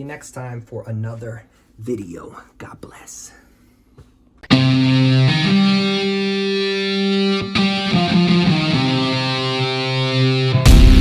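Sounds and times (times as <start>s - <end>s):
distorted electric guitar chords: 4.5s - 11.0s.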